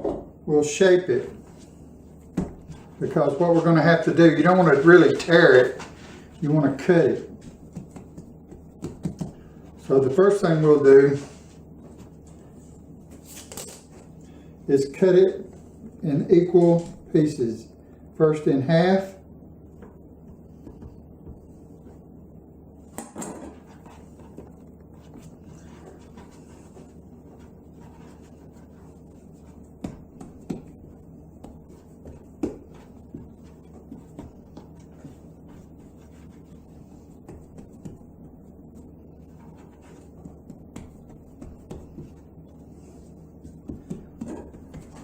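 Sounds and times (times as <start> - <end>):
low room hum: 0.0 - 45.0
dough being cut and handled: 22.9 - 45.0.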